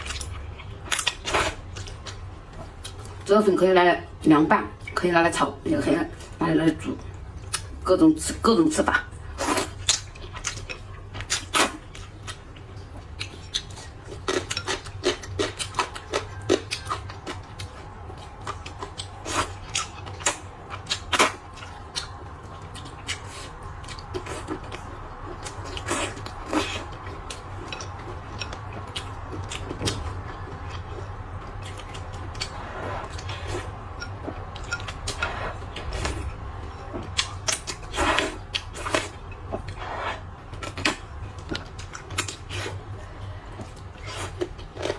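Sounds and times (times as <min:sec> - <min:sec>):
steady low hum: 0:00.0 - 0:44.9
chewing: 0:09.4 - 0:44.9.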